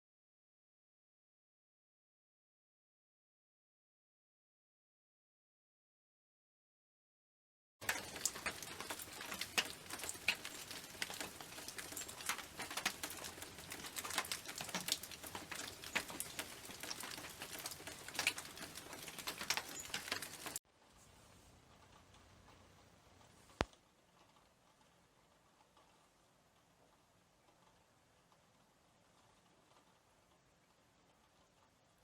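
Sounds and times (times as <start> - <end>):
rain pattering: 7.8 - 20.6, 21.2 - 32.0.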